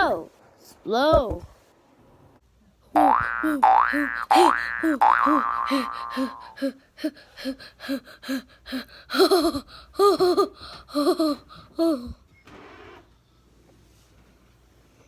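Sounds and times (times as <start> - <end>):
person laughing: 3.0 - 6.7, 7.4 - 12.2.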